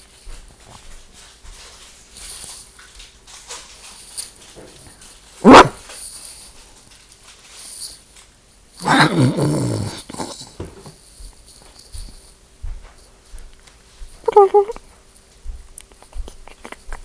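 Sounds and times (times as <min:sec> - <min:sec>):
woman imitating animal calls: 0:05.4 - 0:05.7, 0:08.9 - 0:10.5, 0:14.3 - 0:14.8.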